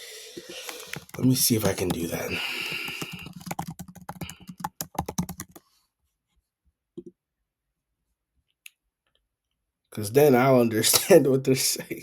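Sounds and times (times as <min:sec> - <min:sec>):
typing on computer keyboard: 0:00.6 - 0:05.6.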